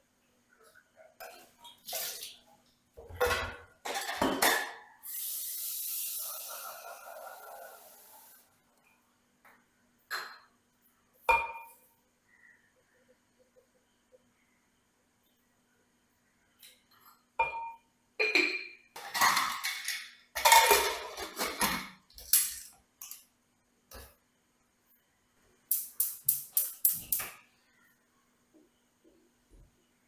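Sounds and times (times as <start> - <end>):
dishes and utensils clattering: 3.0 - 4.9, 16.9 - 23.2.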